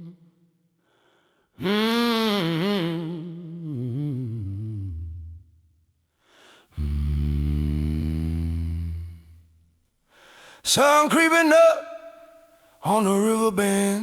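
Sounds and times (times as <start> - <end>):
deep male voice humming: 6.8 - 9.3.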